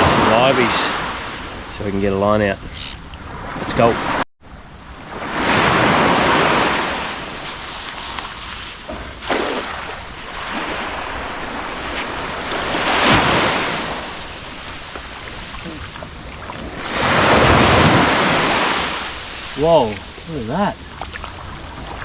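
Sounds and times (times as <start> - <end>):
small waves washing on sand: 4.9 - 22.0
wind buffeting microphone: 5.4 - 22.0.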